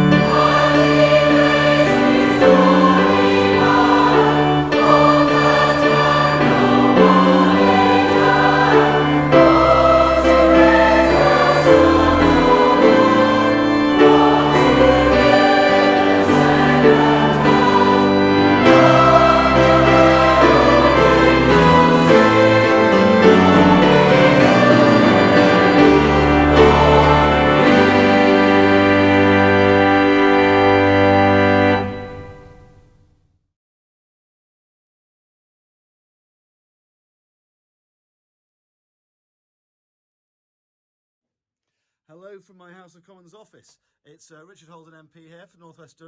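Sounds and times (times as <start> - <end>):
choir singing: 0.0 - 32.8.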